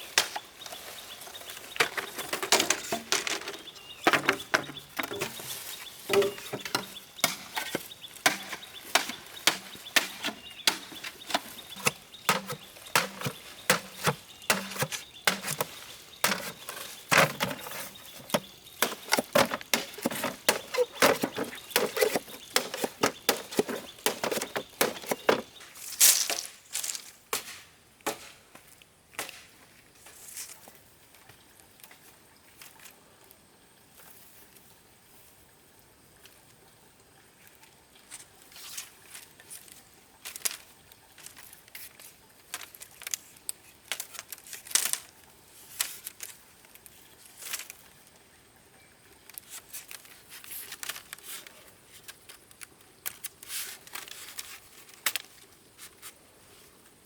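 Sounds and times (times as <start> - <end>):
tool striking bamboo: 6.1 - 25.5.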